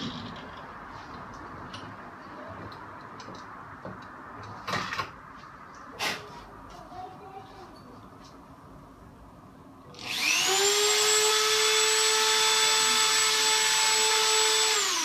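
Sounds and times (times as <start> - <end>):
power tool motor whining: 10.0 - 15.0.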